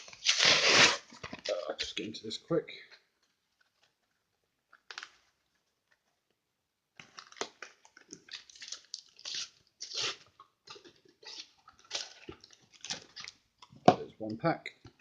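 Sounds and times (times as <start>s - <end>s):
plastic packaging tearing and crinkling: 0.0s - 1.7s, 4.7s - 5.3s, 7.0s - 13.4s.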